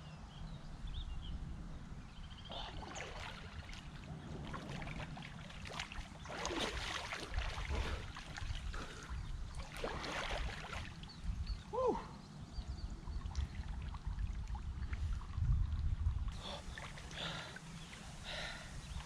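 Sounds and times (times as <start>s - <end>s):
water splashing from swimming: 2.5s - 11.2s.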